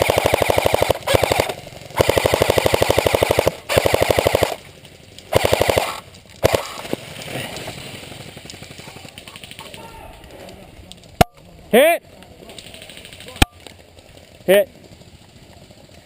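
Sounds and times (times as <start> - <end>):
airsoft rifle firing bursts: 0.0 - 4.6, 5.3 - 7.0.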